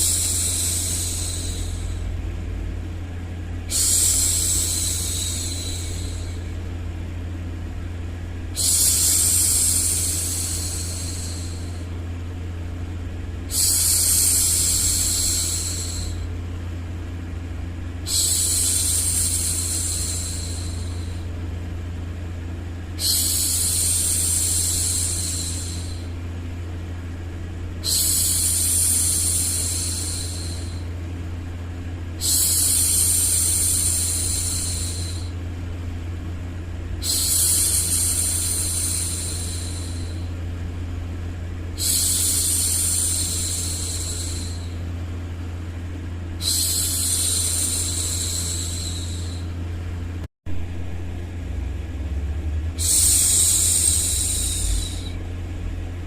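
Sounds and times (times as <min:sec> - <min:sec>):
low white-noise hum: 0:00.0 - 0:56.0
woman shushing: 0:03.7 - 0:06.5, 0:08.6 - 0:11.8, 0:13.5 - 0:16.2, 0:27.8 - 0:30.9, 0:46.4 - 0:49.6, 0:52.8 - 0:55.2.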